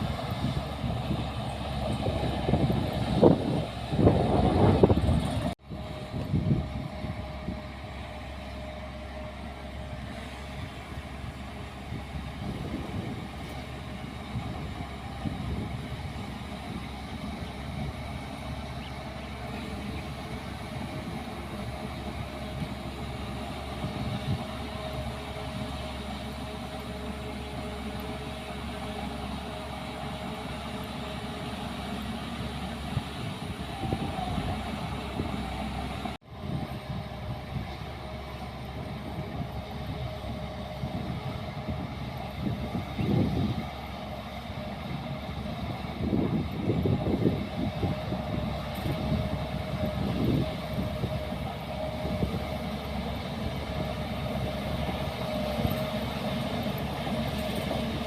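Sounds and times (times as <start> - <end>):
diesel engine low rumble: 0.0 - 58.0.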